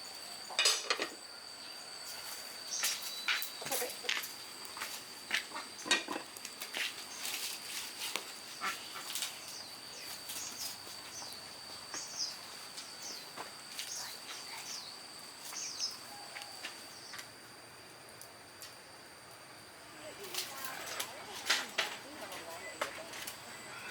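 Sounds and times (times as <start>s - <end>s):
crickets droning: 0.0s - 23.9s.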